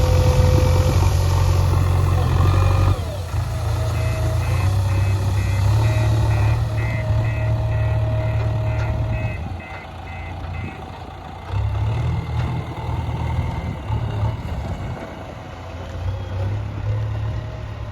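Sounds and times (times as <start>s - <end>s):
diesel engine running: 0.0s - 17.9s
reversing alarm beeping: 3.0s - 10.8s.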